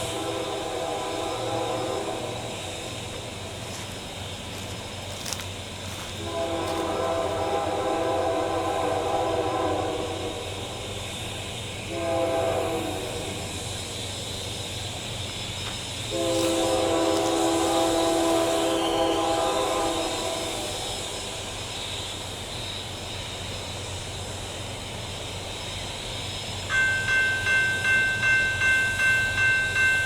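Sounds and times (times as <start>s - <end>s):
locomotive air horn blasts: 0.0s - 3.2s, 5.9s - 10.8s, 11.8s - 13.6s, 16.1s - 21.3s.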